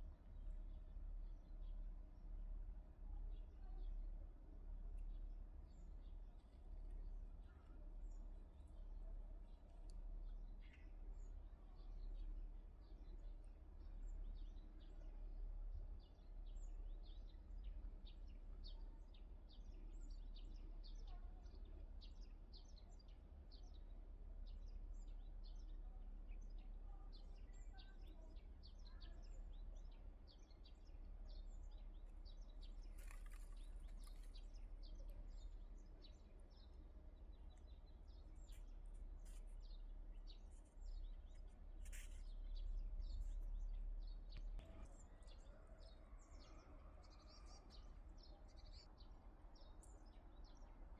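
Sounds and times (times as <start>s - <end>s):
small birds chirping: 16.0s - 50.9s.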